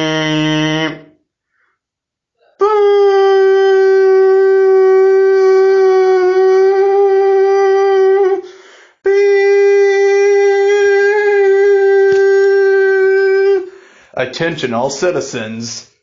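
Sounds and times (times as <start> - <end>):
buzzy alert horn tone: 0.0 - 1.2.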